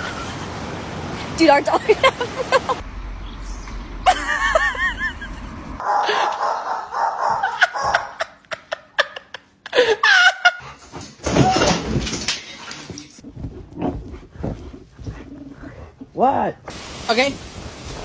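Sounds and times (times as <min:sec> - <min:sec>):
person laughing: 0:01.7 - 0:02.8, 0:05.9 - 0:10.6.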